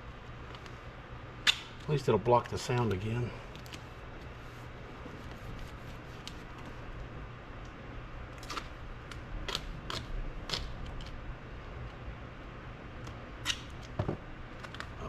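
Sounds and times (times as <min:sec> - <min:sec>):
low steady hum: 0:00.0 - 0:15.0
tape ripping: 0:08.4 - 0:08.8.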